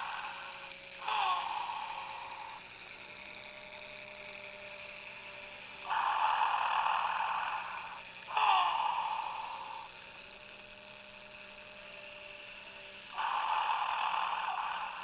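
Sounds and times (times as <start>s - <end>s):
toy figure snoring: 0.0s - 3.5s, 4.1s - 15.0s
faint steady hum: 0.0s - 15.0s.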